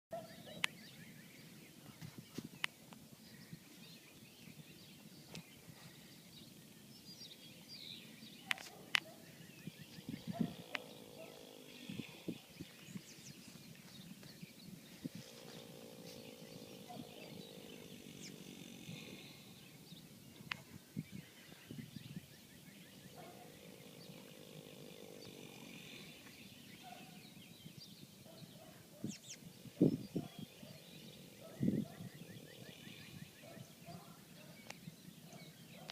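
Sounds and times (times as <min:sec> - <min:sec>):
faint bird chirps: 0:00.2 - 0:35.9
pet snoring: 0:10.0 - 0:12.5, 0:15.2 - 0:19.6, 0:23.1 - 0:26.4.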